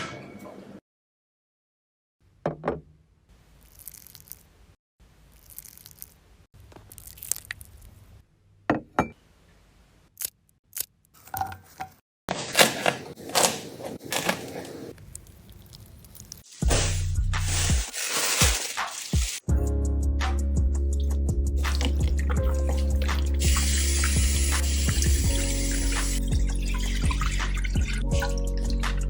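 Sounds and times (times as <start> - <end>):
kitchen knocks snips and scrapes: 11.3 - 14.9.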